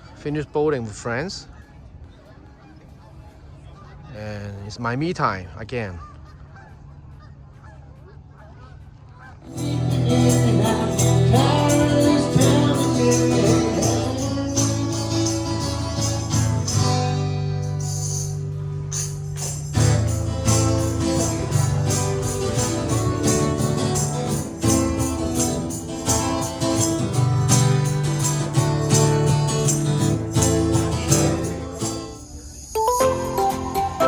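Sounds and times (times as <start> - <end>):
sustained bass line: 9.5 - 32.1
tambourine-like percussion: 9.5 - 34.0
melody: 32.7 - 34.0.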